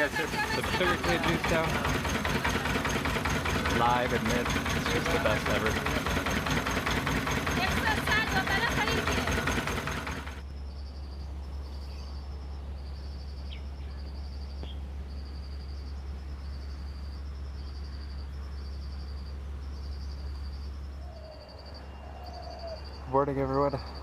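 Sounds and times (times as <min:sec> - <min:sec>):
loud engine noise: 0:00.0 - 0:10.4
crickets chirping: 0:00.0 - 0:24.0
steady low hum: 0:00.0 - 0:24.0
bird-like chirps: 0:10.4 - 0:24.0.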